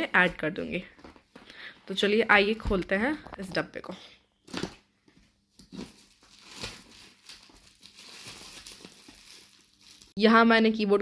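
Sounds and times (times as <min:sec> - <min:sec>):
plastic packaging crinkling: 0:05.6 - 0:10.2.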